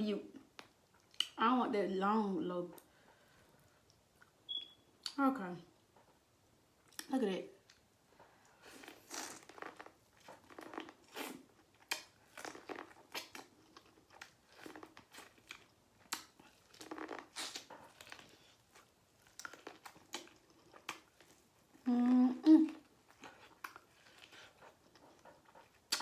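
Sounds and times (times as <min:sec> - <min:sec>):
lip smacks: 0:00.6 - 0:01.4, 0:08.8 - 0:21.8, 0:22.4 - 0:26.0
chewing and biting chicken: 0:08.7 - 0:21.8.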